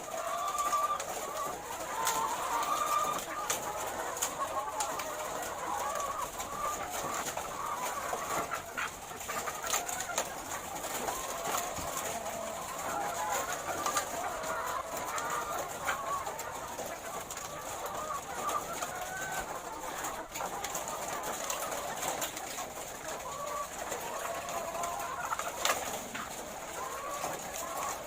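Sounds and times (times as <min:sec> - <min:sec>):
hens clucking and crooning: 0:00.0 - 0:28.0.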